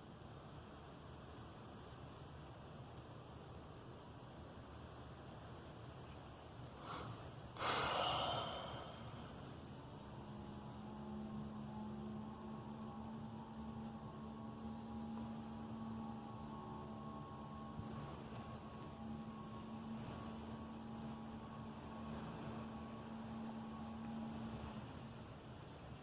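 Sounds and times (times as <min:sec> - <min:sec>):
droning hum with higher tones: 0:00.0 - 0:26.0
short breathy burst: 0:06.8 - 0:09.4.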